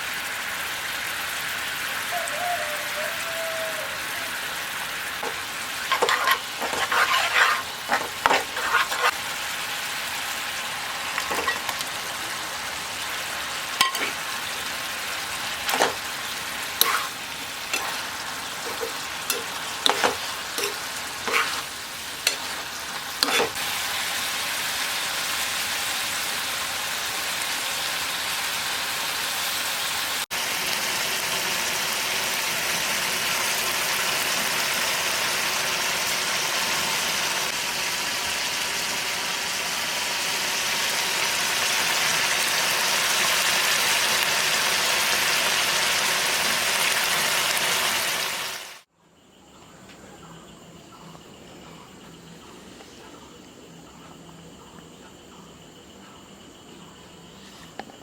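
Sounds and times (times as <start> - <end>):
food sizzling in a pan: 0.0 - 48.9
utensil scraping against pan: 5.2 - 9.2, 11.1 - 12.0, 13.8 - 14.4, 15.4 - 23.6.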